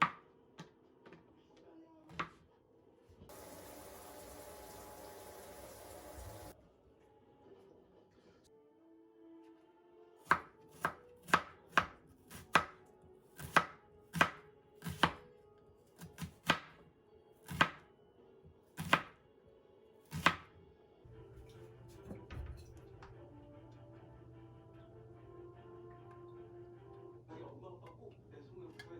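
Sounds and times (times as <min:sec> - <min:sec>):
knife chopping on cutting board: 0:10.3 - 0:12.8, 0:13.4 - 0:15.2, 0:16.0 - 0:16.8, 0:17.5 - 0:17.8, 0:18.8 - 0:19.2, 0:20.1 - 0:20.4.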